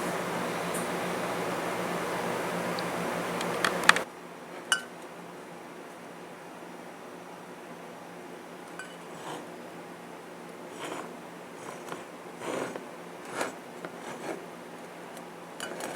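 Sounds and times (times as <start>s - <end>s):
low steady hum: 0.0s - 4.0s.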